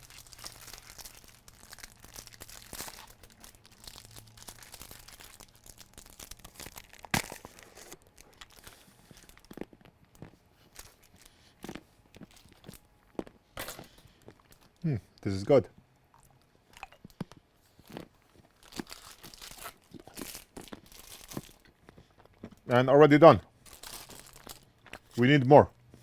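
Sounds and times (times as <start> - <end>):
packaging crinkling and tearing: 0.0 - 12.8, 17.8 - 21.8, 23.6 - 25.2.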